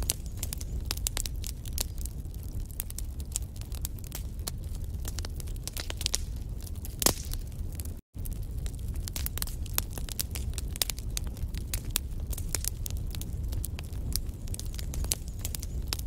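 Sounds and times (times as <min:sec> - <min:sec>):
flames rumbling: 0:00.0 - 0:16.0
wood fire crackling and popping: 0:00.0 - 0:16.0.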